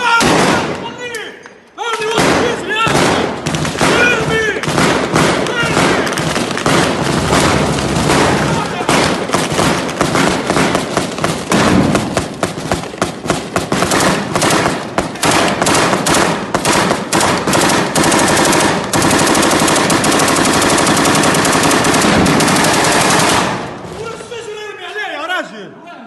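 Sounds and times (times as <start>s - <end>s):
automatic gunfire: 2.1s - 23.9s.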